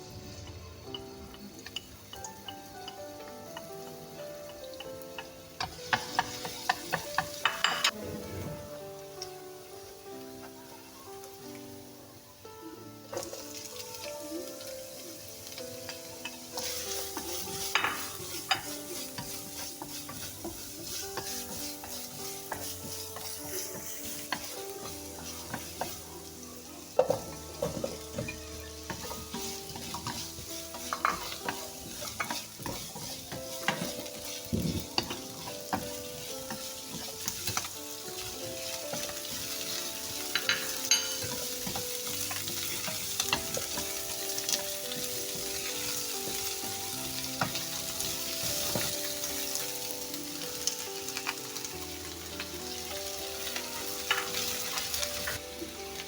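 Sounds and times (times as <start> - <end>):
food sizzling in a pan: 0.0 - 56.0
soft background melody: 0.0 - 56.0
spatula scraping a pan: 15.5 - 49.7.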